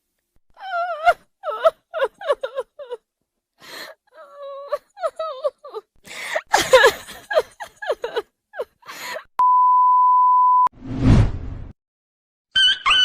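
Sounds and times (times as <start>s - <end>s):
comic wailing and sobbing: 0.5s - 3.0s, 3.8s - 9.3s
censor beep: 9.4s - 10.7s
noisy whoosh: 10.8s - 11.7s.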